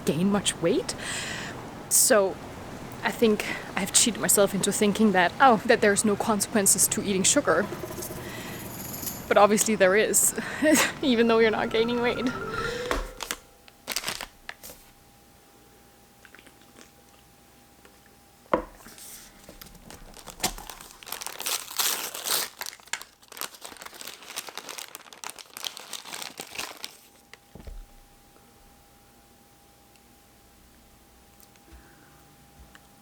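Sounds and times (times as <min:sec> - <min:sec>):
wrapper crinkling: 0:13.8 - 0:14.8, 0:19.4 - 0:27.5.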